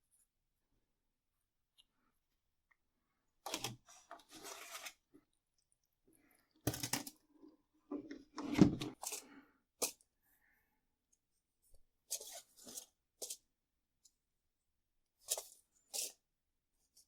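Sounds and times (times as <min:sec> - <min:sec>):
rustles and scrapes of potting soil: 0:03.9 - 0:05.1, 0:12.1 - 0:13.5.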